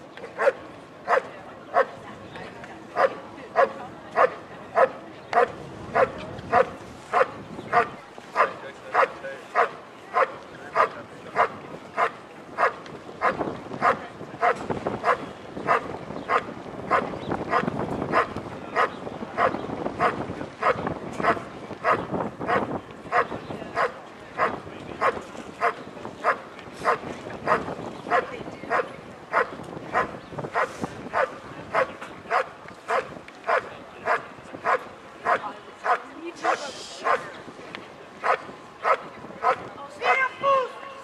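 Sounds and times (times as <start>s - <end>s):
dog barking: 26.2s - 37.2s.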